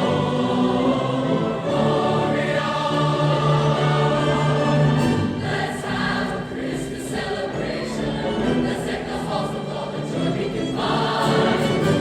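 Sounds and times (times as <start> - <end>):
choir singing: 0.0 - 12.0.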